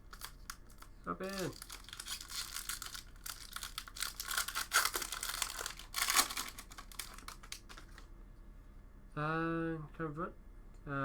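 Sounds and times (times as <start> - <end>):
foil wrapper crinkling and tearing: 0.0 - 8.1.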